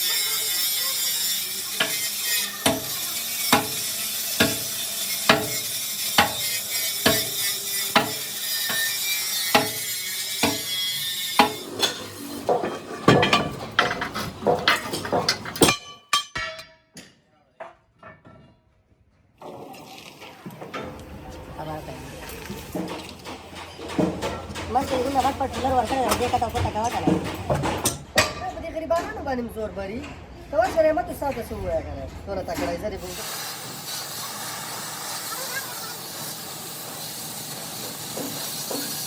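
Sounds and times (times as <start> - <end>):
hammer striking steel: 1.8 - 17.2, 22.7 - 28.6.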